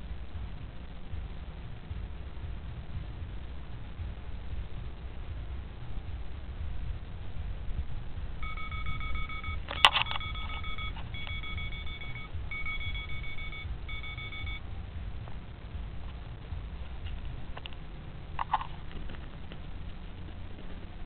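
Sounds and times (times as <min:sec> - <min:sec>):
steady low rumble: 0:00.0 - 0:21.0
electronic beeps: 0:08.4 - 0:14.7.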